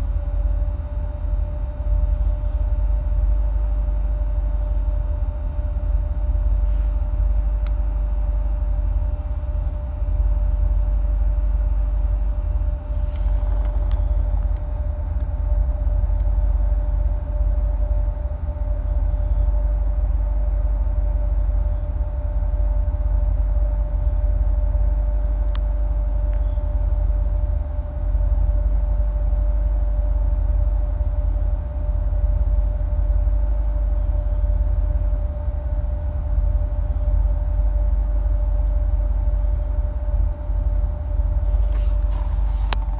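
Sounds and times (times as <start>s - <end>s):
car engine idling: 0.0s - 29.0s, 41.0s - 42.9s
steady hum: 0.0s - 42.9s.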